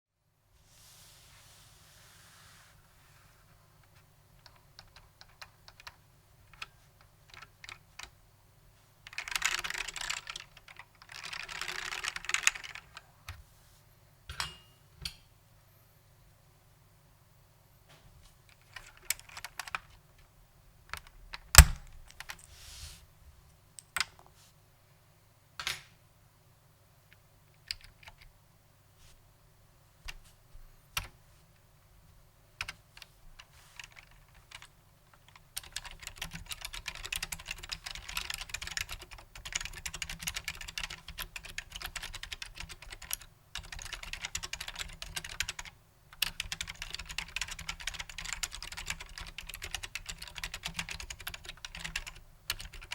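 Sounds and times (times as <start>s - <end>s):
mechanical keyboard typing: 4.4s - 8.1s, 9.1s - 13.0s, 18.6s - 20.0s, 27.6s - 28.3s, 32.6s - 52.9s.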